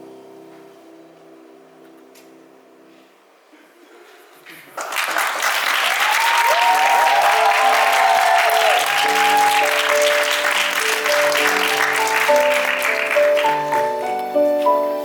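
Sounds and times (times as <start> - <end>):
gentle piano music: 0.0 - 3.5, 7.8 - 15.0
audience cheering: 4.8 - 14.1
audience applause: 4.8 - 14.2.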